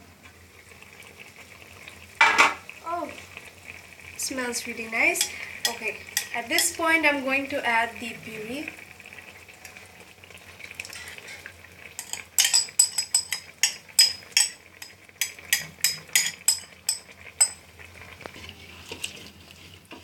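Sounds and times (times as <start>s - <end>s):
metal spoon clinking on pan: 5.2s - 6.8s, 10.8s - 17.6s.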